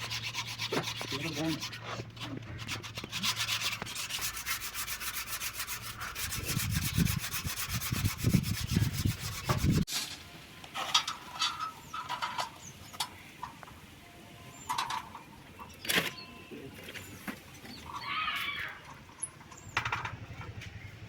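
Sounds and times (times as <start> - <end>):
sanding scraping strokes: 0.0 - 9.9.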